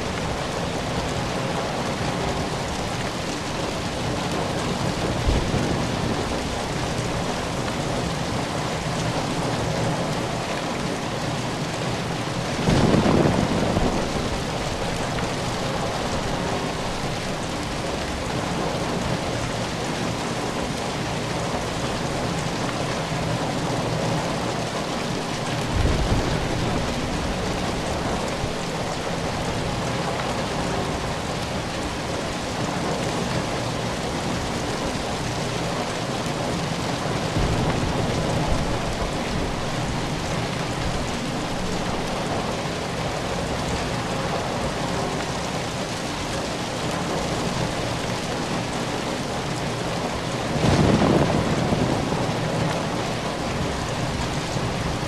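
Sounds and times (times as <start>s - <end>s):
heavy rain falling: 0.0s - 55.0s
thunder rumbling: 3.9s - 19.3s, 25.4s - 29.9s, 35.6s - 42.5s, 49.6s - 55.0s.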